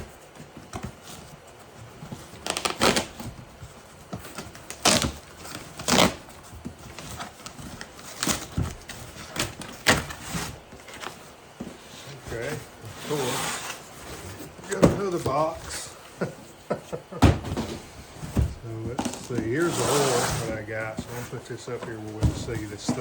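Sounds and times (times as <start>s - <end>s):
cardboard box crinkling and scraping: 0.0s - 23.0s.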